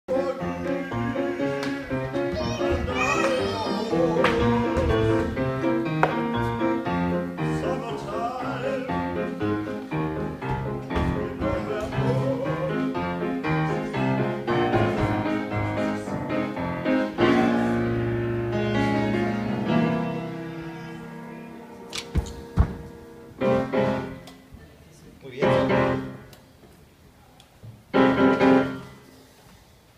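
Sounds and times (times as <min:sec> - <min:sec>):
person singing: 0:00.1 - 0:05.4, 0:07.4 - 0:09.3, 0:11.0 - 0:16.2
piano playing: 0:00.1 - 0:24.5, 0:25.3 - 0:26.3, 0:27.9 - 0:29.1.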